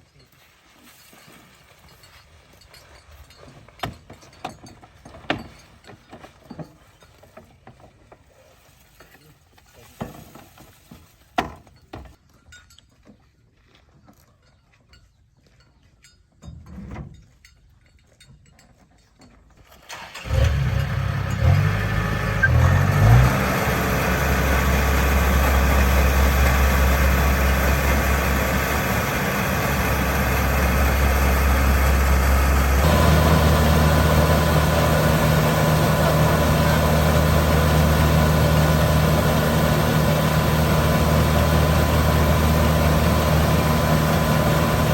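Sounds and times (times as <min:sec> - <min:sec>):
diesel engine starting and running: 0:19.7 - 0:44.9.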